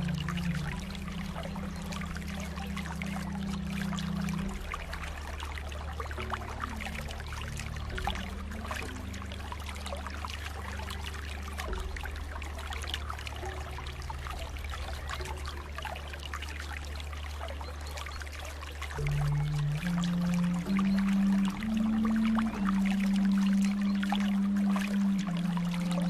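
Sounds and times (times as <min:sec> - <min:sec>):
steady low hum: 0:00.0 - 0:26.0
water trickling and splashing: 0:00.0 - 0:26.0.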